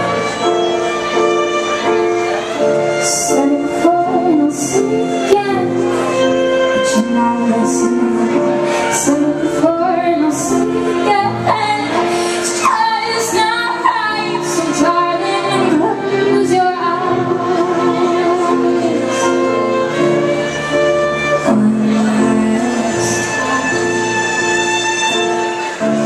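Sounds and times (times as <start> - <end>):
live band playing: 0.0 - 26.0
woman singing: 3.0 - 19.8, 21.2 - 25.0.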